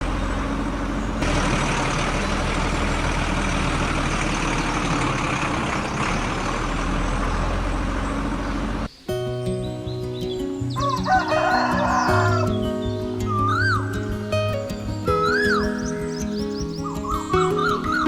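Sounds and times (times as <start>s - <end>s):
heavy diesel engine running: 0.0s - 8.9s.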